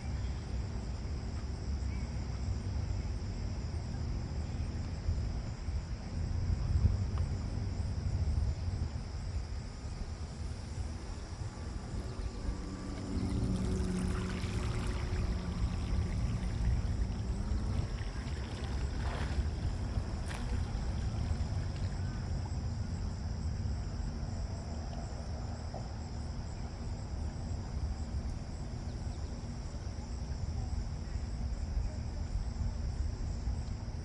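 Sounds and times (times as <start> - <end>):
faint motor hum: 0.0 - 34.0
insects droning: 0.0 - 34.0
wind buffeting microphone: 5.0 - 23.8.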